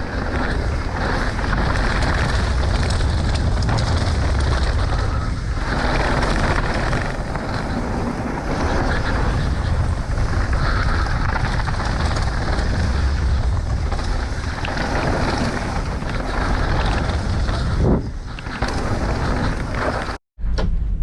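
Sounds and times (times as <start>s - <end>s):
bike tyres rumbling on dirt: 0.0s - 20.2s
wind rushing over microphone: 0.0s - 20.2s.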